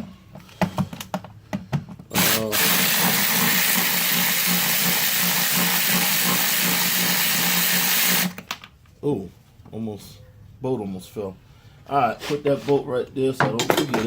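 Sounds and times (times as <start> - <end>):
power drill running: 2.1 - 8.4.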